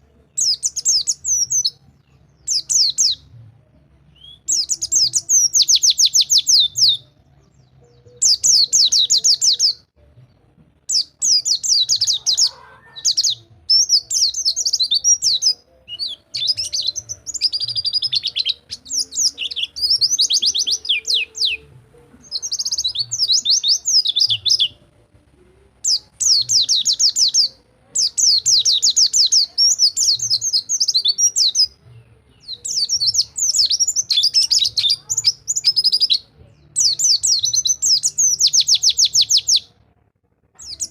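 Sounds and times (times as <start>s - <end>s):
bird singing high trilled phrases: 0.4s - 3.2s, 4.1s - 7.0s, 10.9s - 24.8s, 32.4s - 39.7s.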